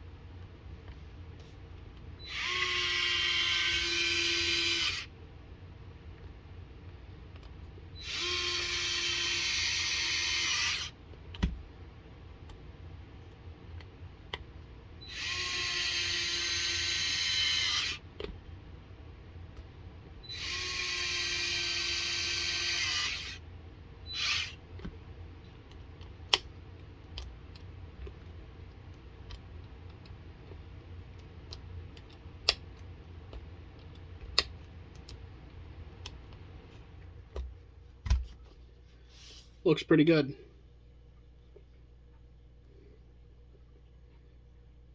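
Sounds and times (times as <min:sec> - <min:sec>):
power driver spinning: 0:08.0 - 0:10.9, 0:15.1 - 0:18.0, 0:20.2 - 0:23.4, 0:24.1 - 0:24.6.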